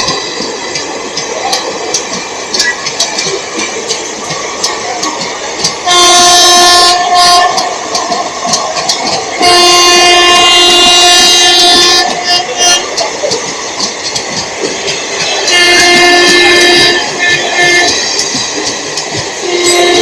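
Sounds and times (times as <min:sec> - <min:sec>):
train running on rails: 0:00.0 - 0:20.0
train wheel clicks: 0:00.0 - 0:20.0
train horn: 0:05.8 - 0:08.0, 0:09.4 - 0:13.0, 0:15.4 - 0:18.1, 0:19.4 - 0:20.0.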